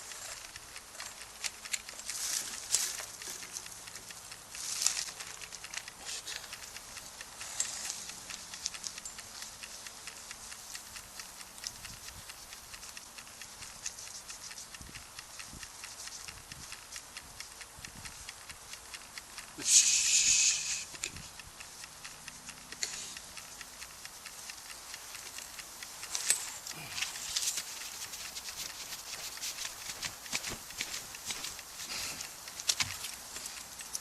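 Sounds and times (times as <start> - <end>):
campfire crackling: 0.0 - 34.0
rustling bursts: 23.2 - 34.0.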